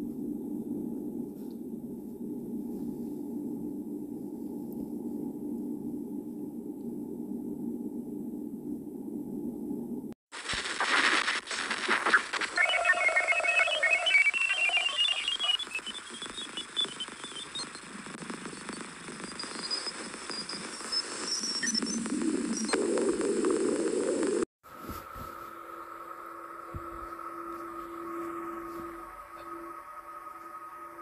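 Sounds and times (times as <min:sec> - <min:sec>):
chirping tones rising in pitch: 0:12.5 - 0:17.8
steady droning tones: 0:25.0 - 0:31.0.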